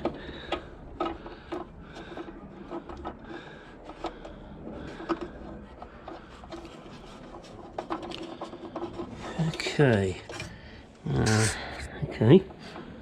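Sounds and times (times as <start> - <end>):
small parts clicking and tapping: 0.0 - 10.5.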